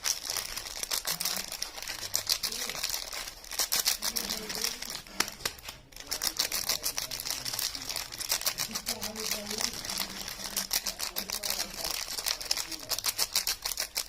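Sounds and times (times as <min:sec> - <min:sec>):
packaging crinkling: 0:00.0 - 0:14.0.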